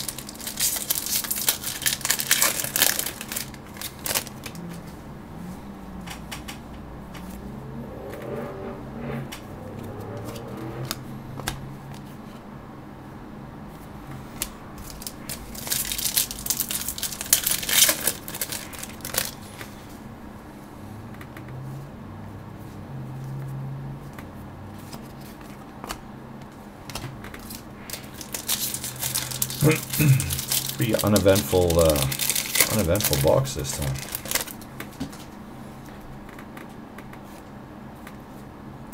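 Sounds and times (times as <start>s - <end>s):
foil wrappers crinkling and tearing: 0.0s - 4.6s, 14.8s - 19.5s, 27.4s - 34.7s.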